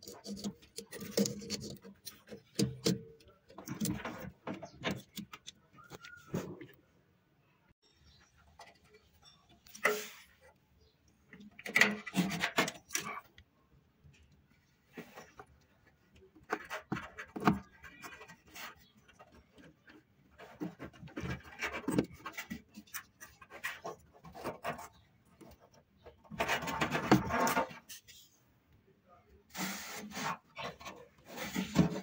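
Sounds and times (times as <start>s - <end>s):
rubbing or scraping: 0.0s - 6.8s, 11.6s - 13.3s, 14.7s - 28.4s, 29.5s - 32.0s.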